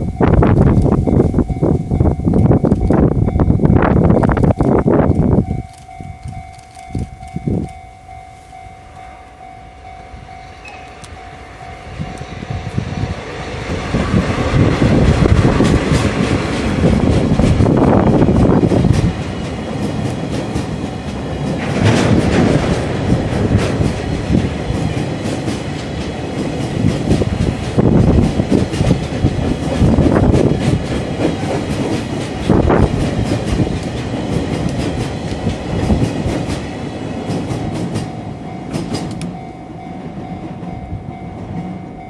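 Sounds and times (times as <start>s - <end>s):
train wheels clattering over rail joints: 13.7s - 39.4s.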